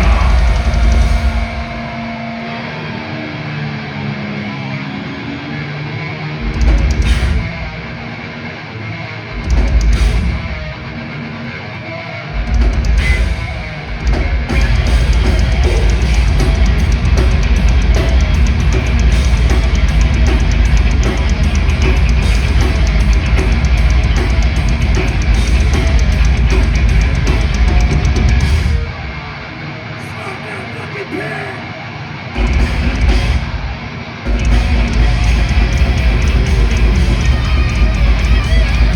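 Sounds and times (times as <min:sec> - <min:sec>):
fast dense drumming: 0:00.0 - 0:02.2, 0:06.6 - 0:07.8, 0:09.4 - 0:10.7, 0:12.4 - 0:29.0, 0:32.4 - 0:38.9
heavy metal band playing live: 0:00.0 - 0:38.9.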